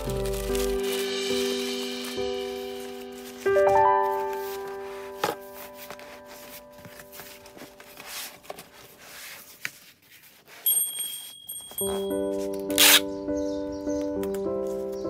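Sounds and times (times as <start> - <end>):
background music: 0.0 - 8.0
high ringing chime: 10.7 - 12.5.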